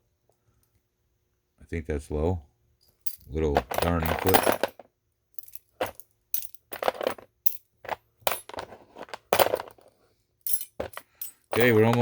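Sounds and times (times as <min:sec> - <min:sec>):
metal parts clinking: 0:02.8 - 0:04.8, 0:05.4 - 0:12.0.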